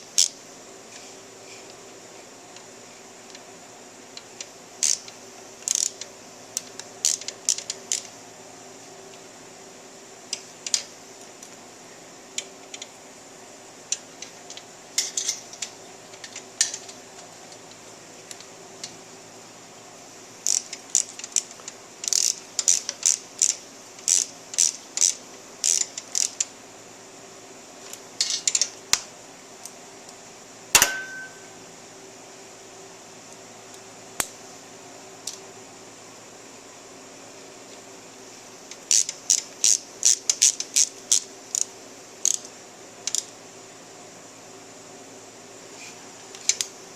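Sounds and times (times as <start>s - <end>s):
hand ratchet clicking: 4.8s - 6.0s, 20.4s - 26.5s, 38.8s - 42.5s
metallic clank: 30.8s - 31.6s.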